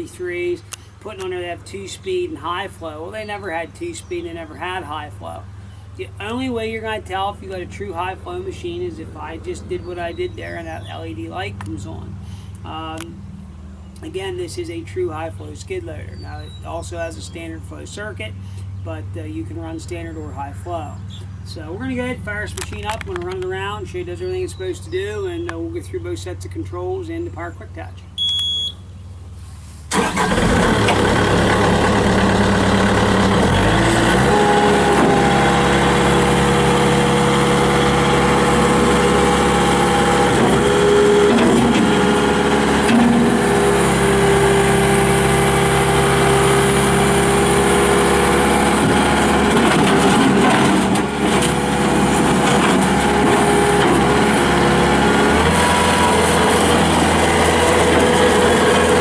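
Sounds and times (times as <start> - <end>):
short beep: 28.2 - 28.8
diesel engine cranking and running: 29.9 - 59.0.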